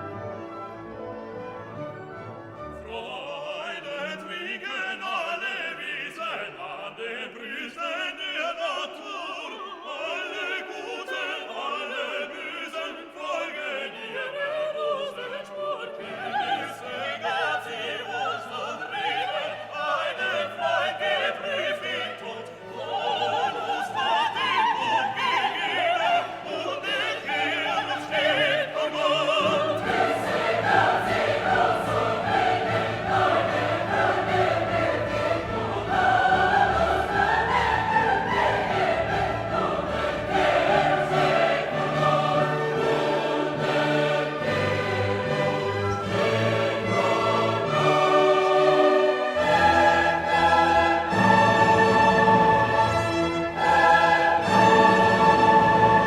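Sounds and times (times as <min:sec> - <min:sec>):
orchestra playing: 0:00.0 - 0:03.3, 0:29.0 - 0:56.0
operatic singers: 0:02.5 - 0:56.0.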